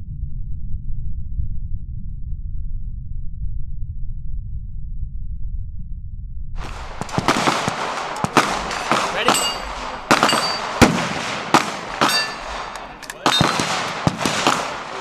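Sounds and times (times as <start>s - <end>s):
gunshots: 6.6s - 15.0s
shooting range noise: 6.6s - 15.0s.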